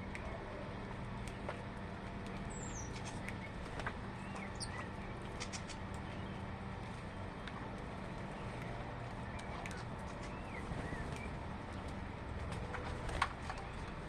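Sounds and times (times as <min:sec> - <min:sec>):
small birds chirping and clicking: 0:00.0 - 0:14.0
steady low hum: 0:00.0 - 0:14.0.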